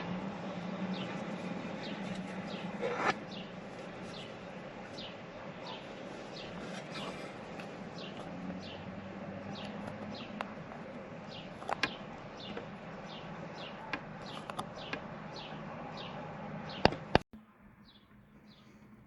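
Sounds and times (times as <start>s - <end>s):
steady low hum: 0.0s - 17.2s
bird chirping: 0.0s - 19.0s.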